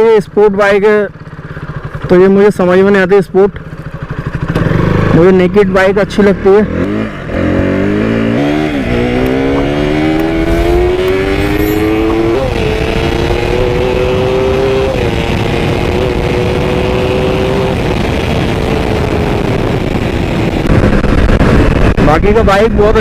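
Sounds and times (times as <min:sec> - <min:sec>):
motorcycle engine accelerating: 0:00.0 - 0:23.0
wind rush on microphone: 0:07.9 - 0:23.0.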